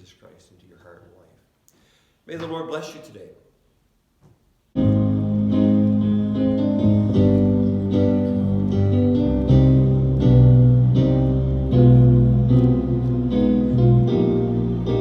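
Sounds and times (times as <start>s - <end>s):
low bass notes: 4.8s - 15.0s.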